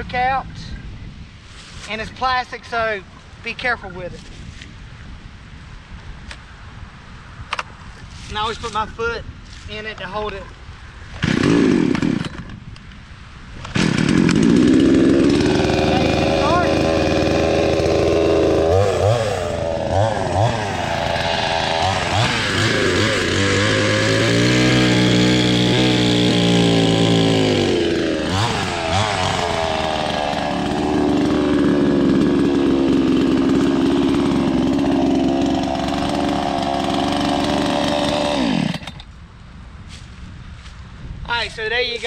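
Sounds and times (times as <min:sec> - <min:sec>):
chainsaw revving: 0:11.2 - 0:12.4, 0:13.7 - 0:39.1.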